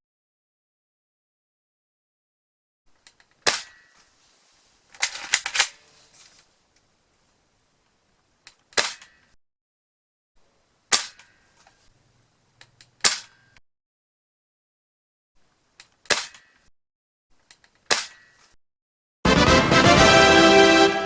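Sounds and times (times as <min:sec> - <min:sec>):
airsoft rifle shots: 0:03.4 - 0:04.0, 0:08.7 - 0:09.4, 0:10.9 - 0:11.5, 0:13.0 - 0:13.6, 0:16.0 - 0:16.7, 0:17.8 - 0:18.5.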